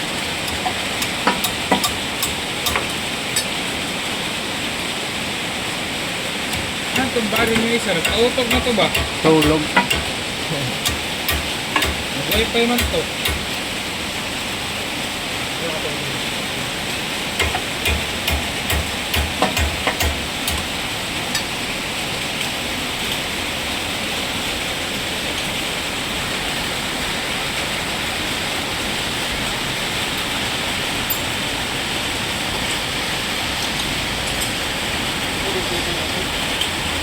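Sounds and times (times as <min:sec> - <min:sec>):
steady hiss: 0:00.0 - 0:23.3
hammer blows: 0:00.5 - 0:03.5, 0:06.5 - 0:13.6, 0:17.4 - 0:20.7.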